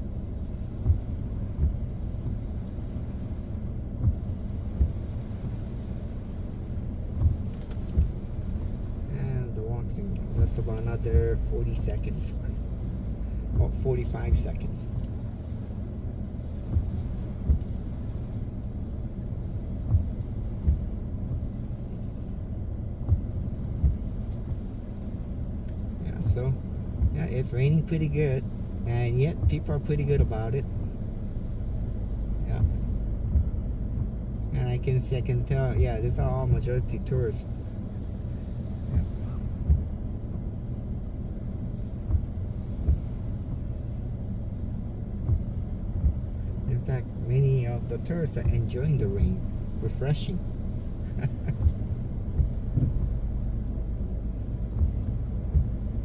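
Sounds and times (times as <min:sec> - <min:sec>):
car cabin rumble: 0:00.0 - 0:56.0
windshield wipers thumping: 0:00.0 - 0:56.0
soft thumps: 0:51.0 - 0:53.2.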